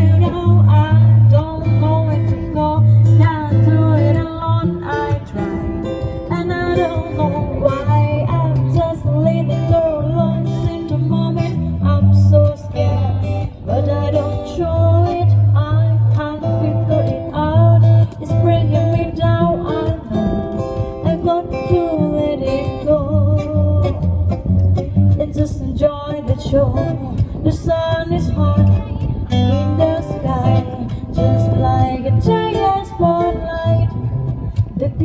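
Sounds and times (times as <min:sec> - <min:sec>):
guitar: 0:00.0 - 0:35.0
bass line low notes: 0:22.9 - 0:25.7.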